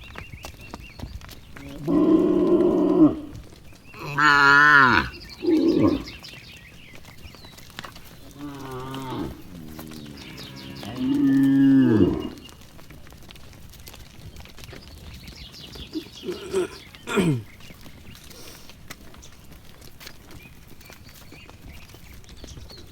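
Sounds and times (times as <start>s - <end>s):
cattle mooing: 1.6s - 3.4s, 4.0s - 6.2s, 8.2s - 12.6s, 16.0s - 17.5s.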